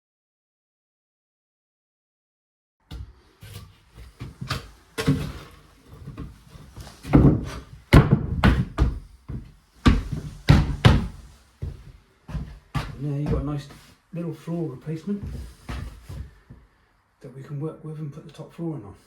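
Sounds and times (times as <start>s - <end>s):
wooden thuds and knocks: 4.0s - 13.6s.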